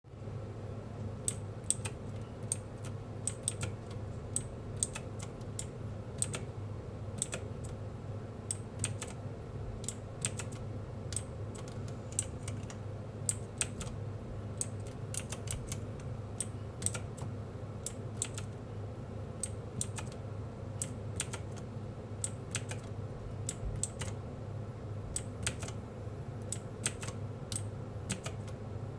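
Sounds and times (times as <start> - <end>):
faint steady hum: 0.1 - 28.9
mechanical keyboard clicking: 1.3 - 6.5, 7.2 - 7.8, 8.5 - 9.2, 9.8 - 14.0, 14.6 - 18.6, 19.4 - 20.2, 20.8 - 24.2, 25.2 - 25.8, 26.4 - 28.6.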